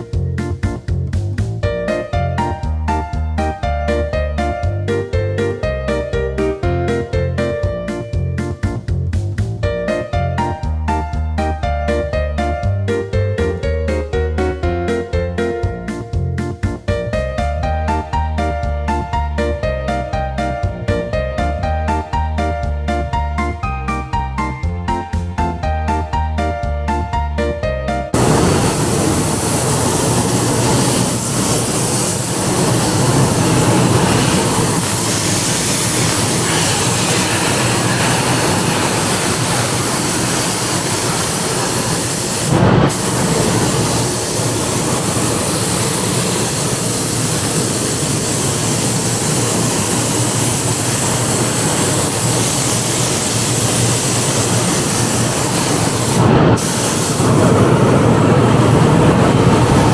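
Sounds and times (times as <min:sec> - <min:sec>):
paint spray gun hissing: 0:28.2 - 0:59.9.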